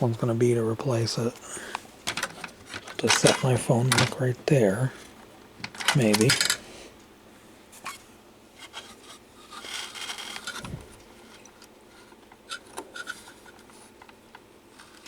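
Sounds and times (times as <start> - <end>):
rubbing and scraping of small parts: 1.7 - 4.2, 4.9 - 6.7, 7.8 - 15.0.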